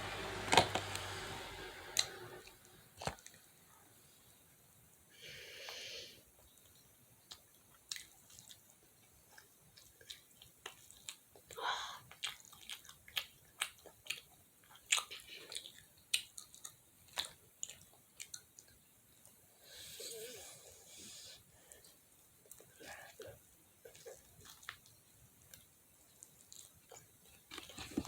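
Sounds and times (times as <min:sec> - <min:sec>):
crunchy chewing of fried chicken: 0:06.4 - 0:19.8, 0:21.6 - 0:28.0.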